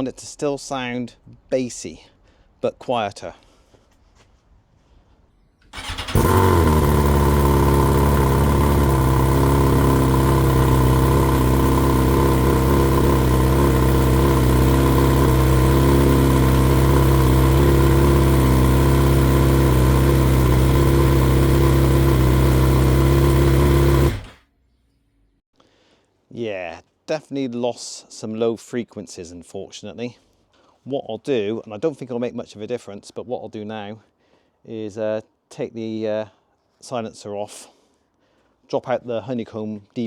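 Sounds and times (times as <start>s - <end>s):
motorcycle engine idling: 5.8s - 24.4s.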